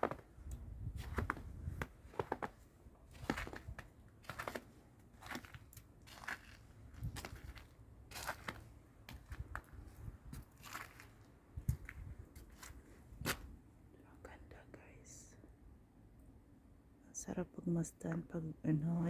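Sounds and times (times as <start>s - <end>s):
wind rumble on microphone: 0.0s - 4.5s, 6.8s - 13.6s
footsteps crunching in snow: 0.9s - 13.5s.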